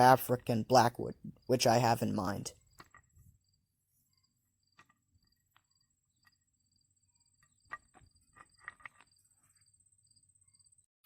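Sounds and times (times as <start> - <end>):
crickets chirping: 2.6 - 10.9.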